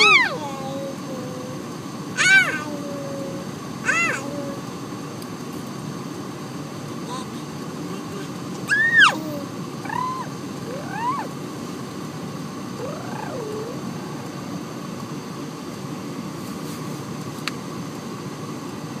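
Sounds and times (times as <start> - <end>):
low background hum: 0.0 - 19.0
cat meowing: 3.9 - 4.2.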